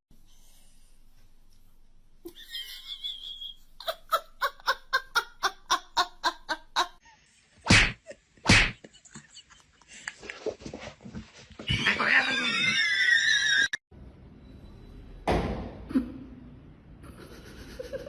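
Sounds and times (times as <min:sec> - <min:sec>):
person laughing: 0:02.3 - 0:07.0, 0:17.0 - 0:18.0.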